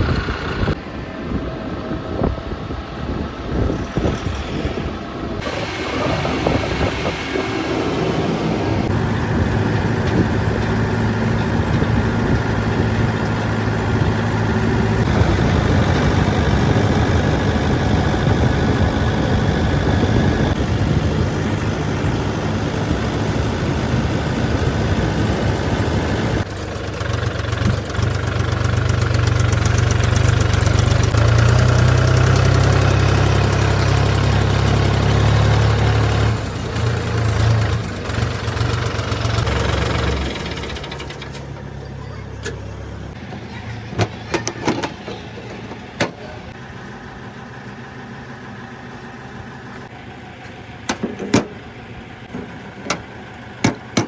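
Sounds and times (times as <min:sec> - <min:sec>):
diesel engines running: 0:00.0 - 0:54.0.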